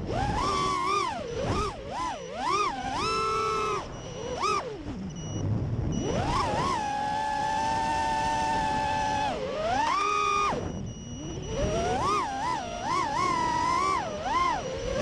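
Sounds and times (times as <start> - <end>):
quadcopter motors whining: 0.0 - 15.0.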